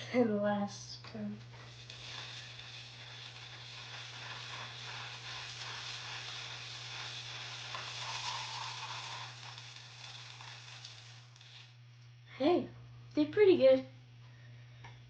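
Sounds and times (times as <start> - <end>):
constant low hum: 0.0 - 15.0
beads rattling in spinning bowl: 1.4 - 11.8.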